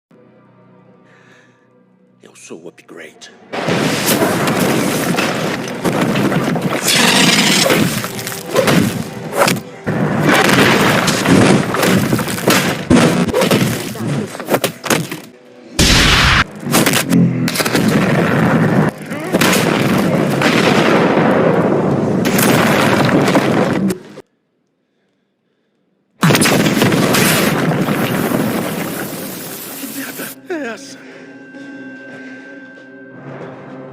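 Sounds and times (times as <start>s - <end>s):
debris crashing: 3.6s - 9.2s, 9.9s - 24.2s, 26.2s - 30.4s.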